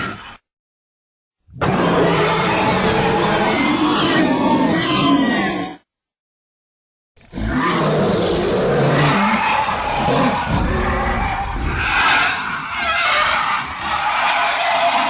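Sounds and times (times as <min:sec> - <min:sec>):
creature roaring and screeching: 0:01.5 - 0:05.8, 0:07.3 - 0:15.0.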